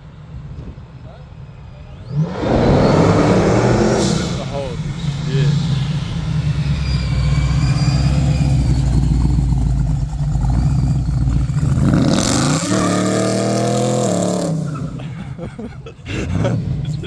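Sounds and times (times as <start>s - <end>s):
supercharged engine revving: 2.0s - 15.1s
supercharger hiss: 2.2s - 9.3s.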